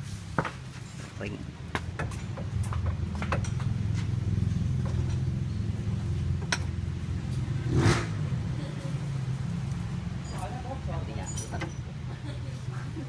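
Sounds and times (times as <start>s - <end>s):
car engine idling: 1.6s - 7.7s.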